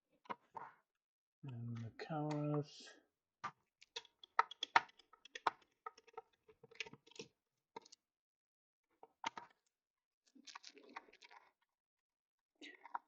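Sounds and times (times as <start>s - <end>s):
tools and plastic parts clicking: 3.4s - 8.0s.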